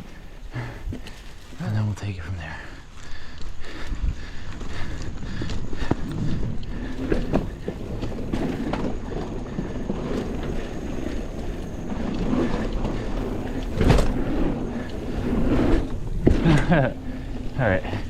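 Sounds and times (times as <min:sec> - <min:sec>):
bike tyres on dirt: 0:00.0 - 0:18.0
wind on microphone: 0:03.6 - 0:18.0.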